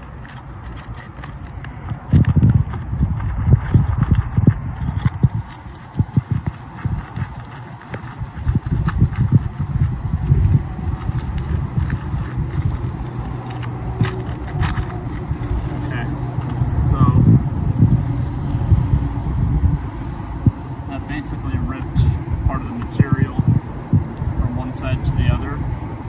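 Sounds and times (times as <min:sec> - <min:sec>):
putty knife knocking and scraping: 0:00.0 - 0:16.6.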